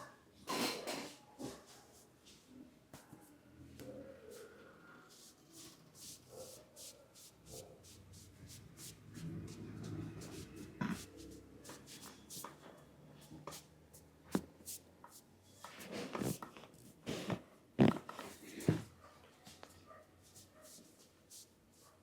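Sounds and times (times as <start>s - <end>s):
hands rubbing oiled hair: 5.1s - 12.6s.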